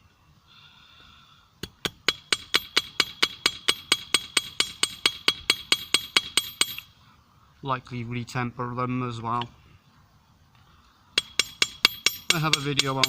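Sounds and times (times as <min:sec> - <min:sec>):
hammer ringing on anvil: 0:11.2 - 0:13.0.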